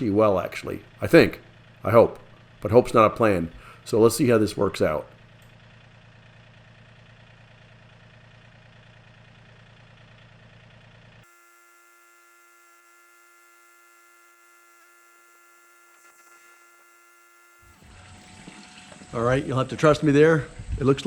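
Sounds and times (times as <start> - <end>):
tractor engine idling: 0.0 - 12.6
thin high steady hum: 11.2 - 21.0.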